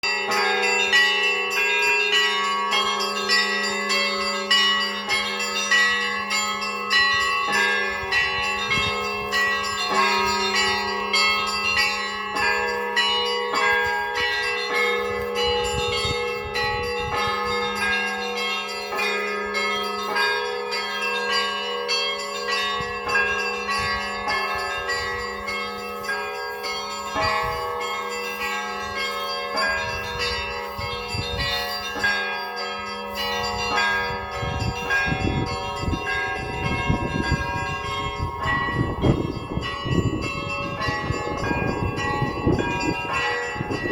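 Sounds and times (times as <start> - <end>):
small church bells ringing: 0.0 - 43.9
deep bell humming: 32.8 - 43.9.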